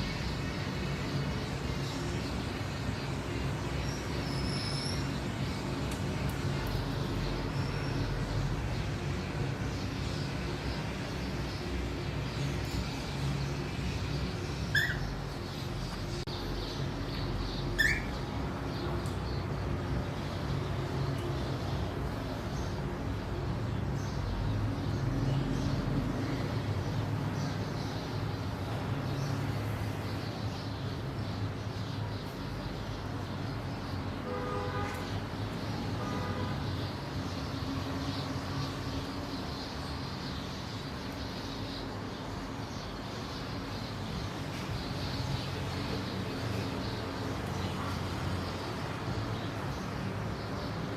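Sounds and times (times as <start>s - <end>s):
parrot chirping: 14.7s - 15.4s, 17.7s - 18.2s.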